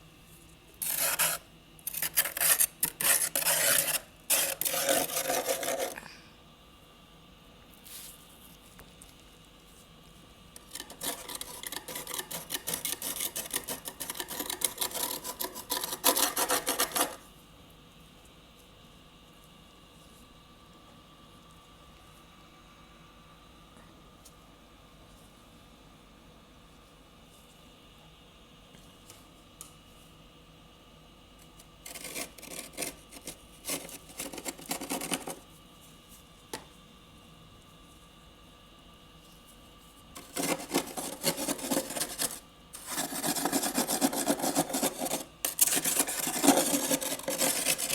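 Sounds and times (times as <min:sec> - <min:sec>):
freezer frost being scraped: 0:00.8 - 0:06.1, 0:10.6 - 0:17.2, 0:31.8 - 0:35.5, 0:40.2 - 0:47.9
freezer frost crunching: 0:40.2 - 0:47.9.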